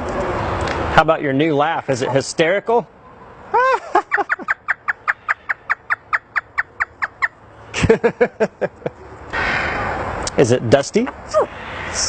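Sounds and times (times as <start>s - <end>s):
parrot imitating laughter: 3.5s - 5.0s.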